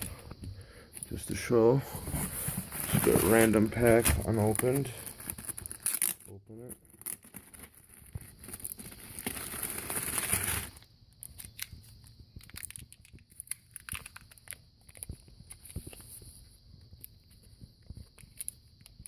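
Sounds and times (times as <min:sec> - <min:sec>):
packaging crinkling: 0:02.1 - 0:16.1
packet tearing open: 0:04.3 - 0:11.7.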